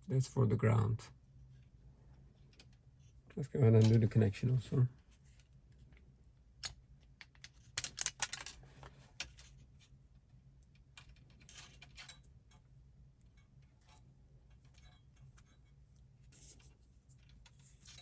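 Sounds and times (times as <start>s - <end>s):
hands rustling wires: 5.0s - 18.0s.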